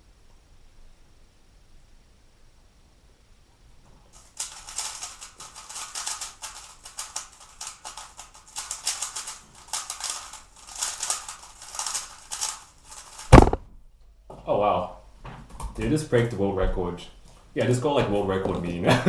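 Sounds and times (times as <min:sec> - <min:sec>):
speedcube clicking as it turns: 0:04.2 - 0:13.4.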